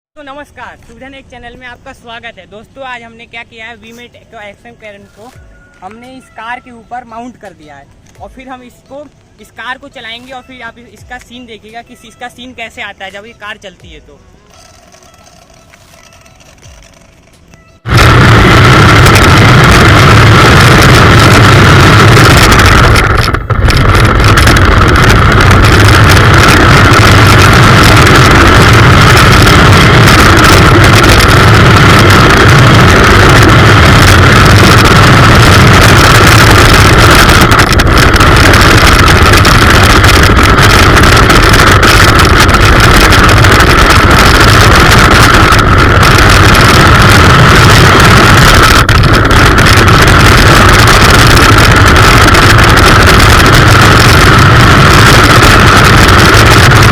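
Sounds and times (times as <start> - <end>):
toy car motor whining: 14.5 - 17.6.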